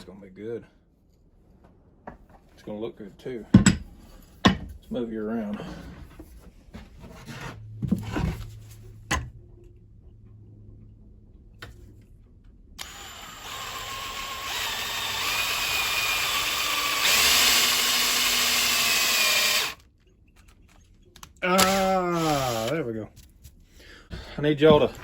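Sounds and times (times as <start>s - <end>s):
power drill whining: 12.8s - 19.8s, 21.5s - 22.8s
handling knocks: 24.6s - 25.0s.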